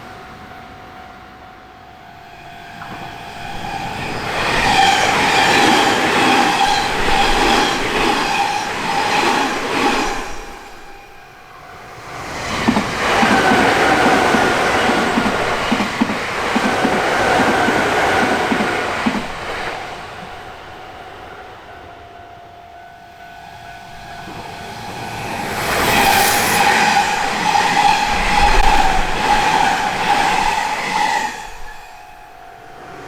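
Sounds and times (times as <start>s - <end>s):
train high whine: 0.0s - 33.0s
train wheels clattering over rails: 11.8s - 20.6s, 24.2s - 32.2s.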